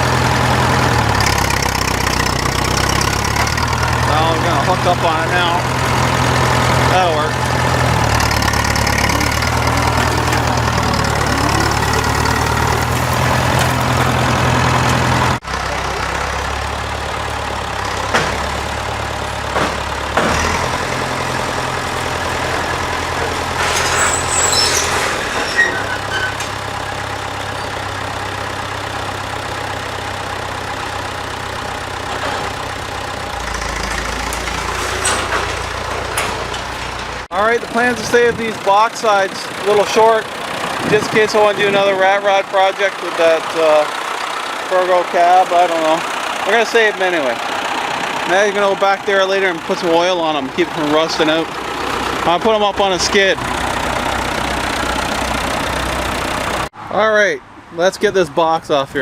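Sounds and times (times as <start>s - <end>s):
engine idling: 0.0s - 24.6s, 25.9s - 56.7s
high squeaks: 22.1s - 27.9s.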